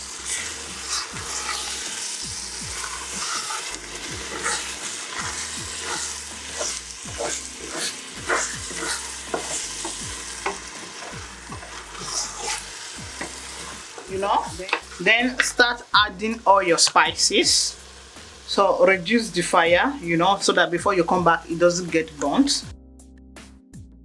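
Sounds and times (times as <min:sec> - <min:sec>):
paste sizzling in a pot: 0:00.0 - 0:22.7
spoon scraping and knocking pot: 0:02.5 - 0:15.6.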